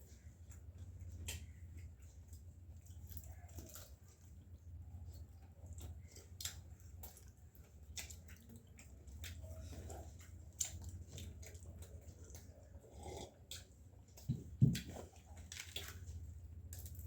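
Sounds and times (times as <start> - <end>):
low steady hum: 0.0 - 17.0
person chewing with mouth clicks: 5.0 - 16.0.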